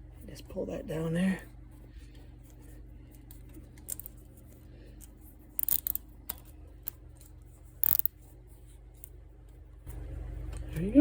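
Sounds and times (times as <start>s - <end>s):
zip tie rasping and clicking: 5.6s - 6.4s, 7.8s - 8.1s.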